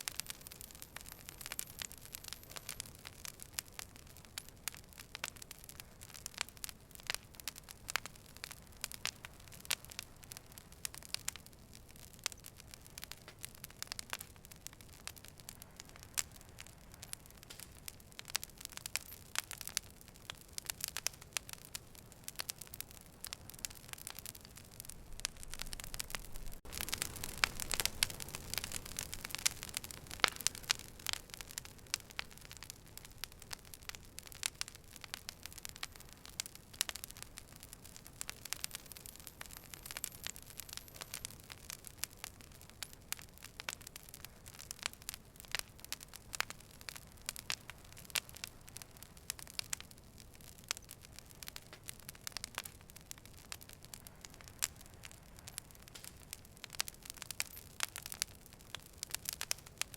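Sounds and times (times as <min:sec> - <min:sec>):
fire crackling and popping: 0:00.0 - 0:59.9.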